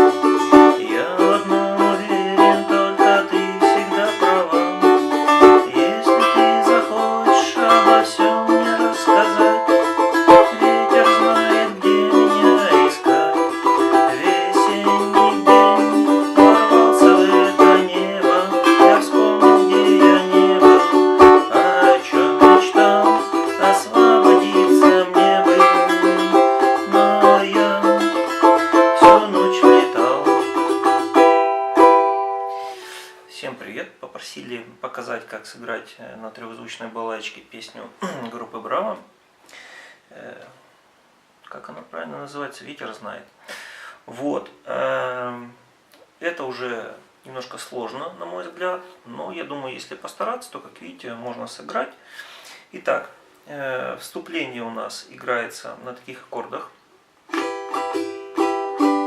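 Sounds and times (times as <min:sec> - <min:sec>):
balalaika strummed rapidly: 0:00.0 - 0:33.4, 0:57.3 - 0:59.0.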